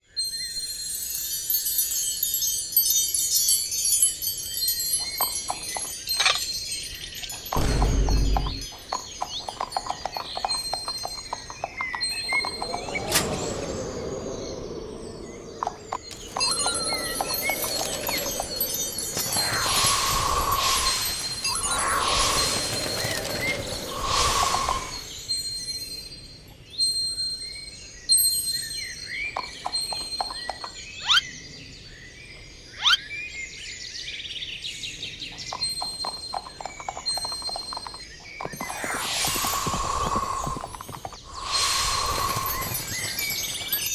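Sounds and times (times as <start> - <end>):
birds chirping: 7.2 - 25.6, 35.3 - 43.9
bright magic-spell hit: 7.6 - 8.7
sparkling chime tones: 9.9 - 25.9
loud rising zips: 12.0 - 25.3
hooves clip-clopping: 15.6 - 25.0, 36.4 - 43.9.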